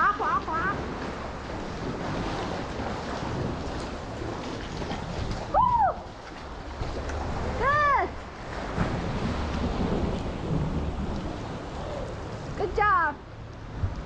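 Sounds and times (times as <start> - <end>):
ocean water sloshing: 0.0 - 14.0
wind noise on microphone: 6.7 - 12.8, 13.4 - 14.0.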